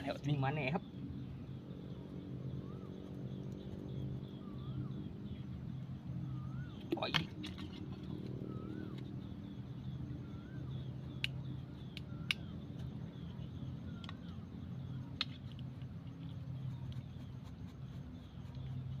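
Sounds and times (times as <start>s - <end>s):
low steady hum: 0.0s - 19.0s
sharp clicks: 11.2s - 12.5s.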